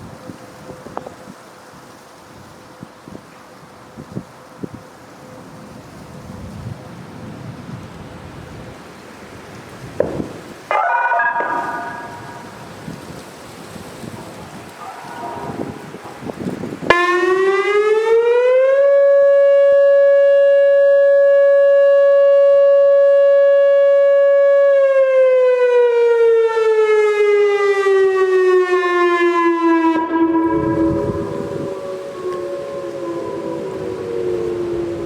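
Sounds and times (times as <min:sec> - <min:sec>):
outdoor warning siren: 0:10.0 - 0:35.0.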